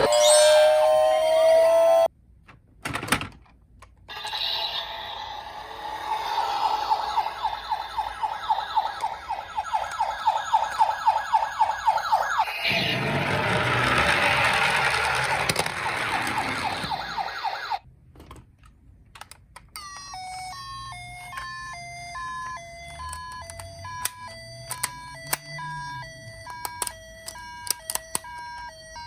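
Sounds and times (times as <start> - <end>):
toy siren yelp: 0.0 - 2.1, 4.1 - 17.8, 19.8 - 29.0
two-tone ambulance siren: 0.0 - 2.1, 4.1 - 17.8, 19.8 - 29.0
loud rushing noise: 4.2 - 8.8.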